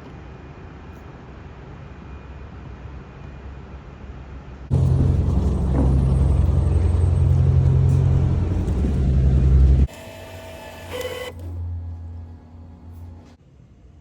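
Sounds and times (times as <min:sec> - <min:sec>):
low mechanical rumble: 0:04.7 - 0:09.9, 0:10.9 - 0:13.4.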